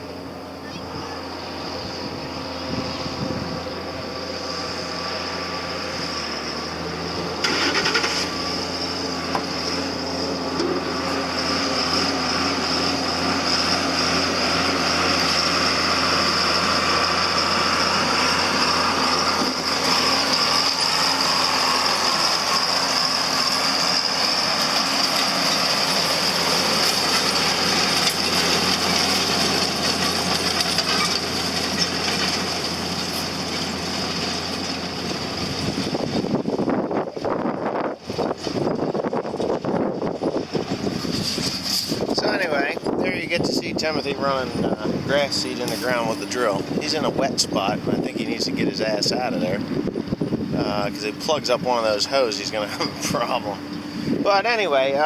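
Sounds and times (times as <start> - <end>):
high whine: 0.0 - 33.8
tractor engine running: 0.0 - 55.0.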